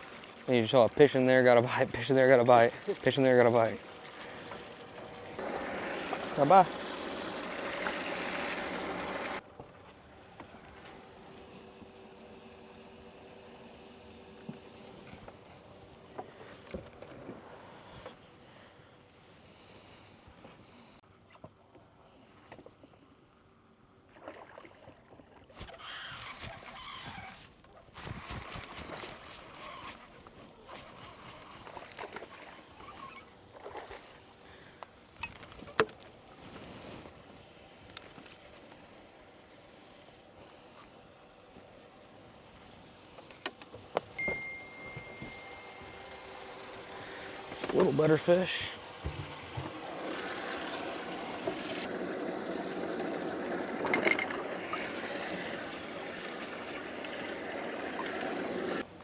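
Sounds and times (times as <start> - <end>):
water lapping against boat hull: 0.0 - 9.4, 23.9 - 41.6
water rushing around boat: 0.0 - 21.0, 23.9 - 59.0
sharp clatter: 53.8 - 54.4.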